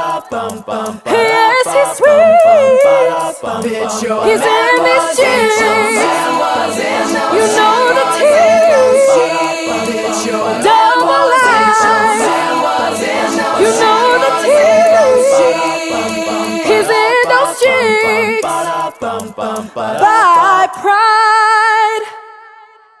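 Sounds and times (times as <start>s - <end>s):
a cappella voices singing harmony: 0.0s - 23.0s.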